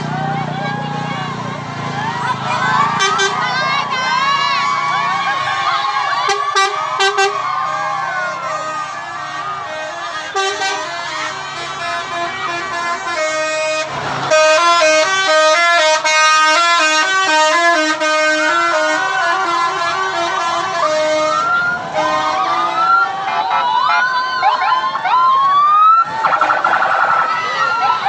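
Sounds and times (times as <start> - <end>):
bus horns playing a melody: 0.9 - 4.6, 5.3 - 24.2, 26.2 - 27.2.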